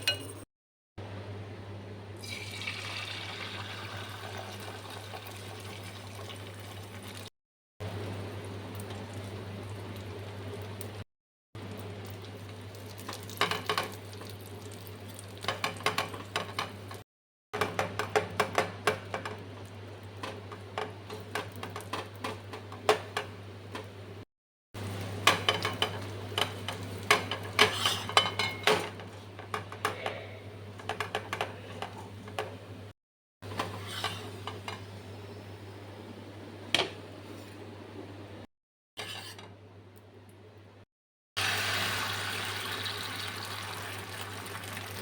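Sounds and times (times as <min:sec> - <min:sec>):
metal clinking on pan: 0:00.0 - 0:00.4
faint sizzle: 0:01.3 - 0:11.0, 0:41.4 - 0:45.0
spoon scraping in cooking pot: 0:27.3 - 0:28.6, 0:33.5 - 0:34.8, 0:39.0 - 0:39.5.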